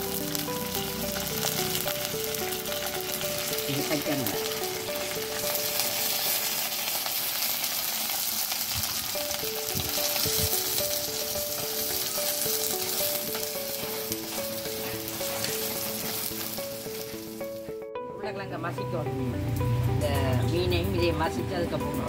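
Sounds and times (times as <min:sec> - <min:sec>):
food sizzling in hot oil: 0:00.0 - 0:22.0
stirring in a pan: 0:00.6 - 0:17.4.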